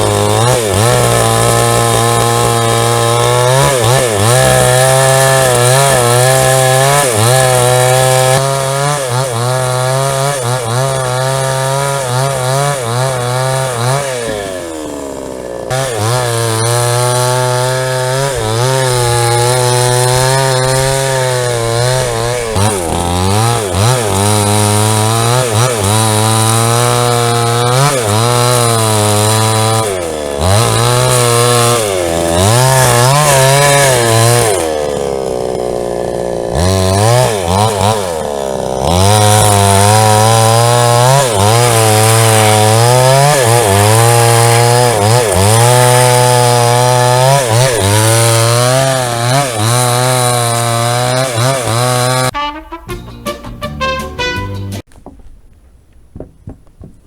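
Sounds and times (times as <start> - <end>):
chainsaw cutting log: 0.0 - 52.4.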